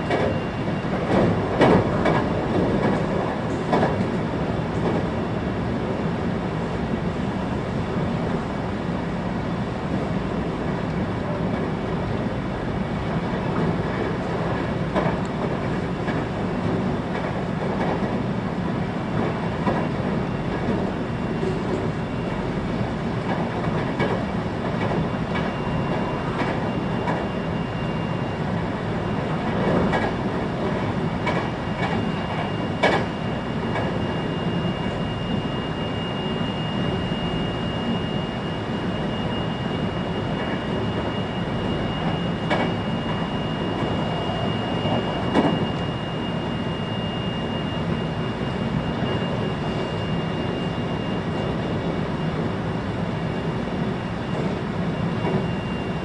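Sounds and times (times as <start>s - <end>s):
train wheels rumbling on rails: 0.0s - 56.0s
faint rail joint clicks: 0.1s - 5.1s, 26.4s - 27.2s, 29.4s - 30.2s, 30.8s - 33.1s, 42.4s - 43.2s.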